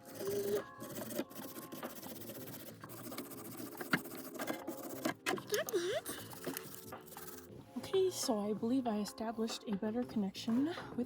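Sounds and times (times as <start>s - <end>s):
faint scratching and scraping: 0.0s - 7.6s.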